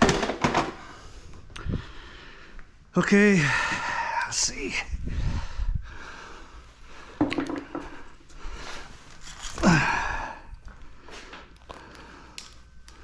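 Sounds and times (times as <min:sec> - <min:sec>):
appliance knocking and rattling: 0:00.0 - 0:00.8
man grunting: 0:09.6 - 0:10.4.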